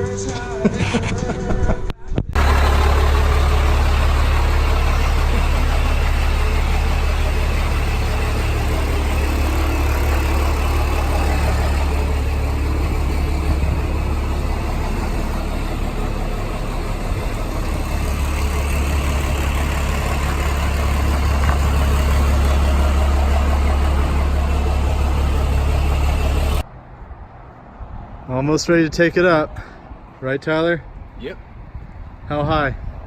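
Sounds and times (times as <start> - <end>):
engine idling: 2.4 - 26.7.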